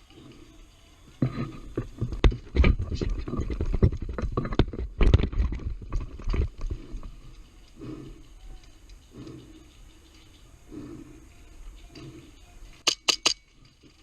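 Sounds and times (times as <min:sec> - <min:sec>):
close knocks and thumps: 0:01.2 - 0:06.8.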